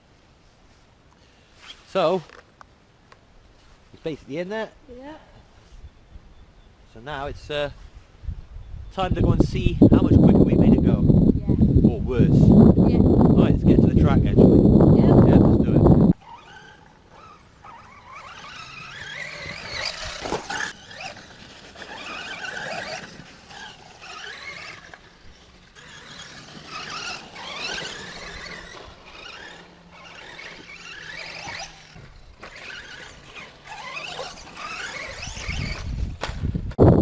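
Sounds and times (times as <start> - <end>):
electric motor whining: 10.0 - 36.2.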